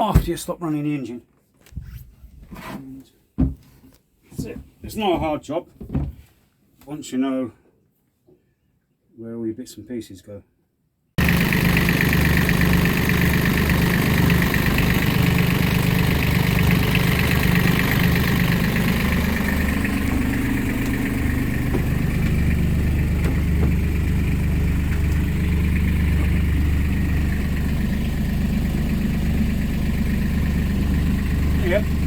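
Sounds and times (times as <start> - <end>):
diesel engine idling: 11.2 - 32.0.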